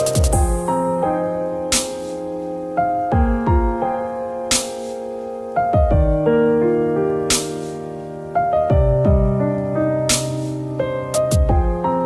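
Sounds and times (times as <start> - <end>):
soft piano background music: 0.0 - 12.0
deep kick drum: 0.2 - 0.7, 3.2 - 3.8, 5.8 - 6.3, 8.7 - 9.4, 11.3 - 11.9.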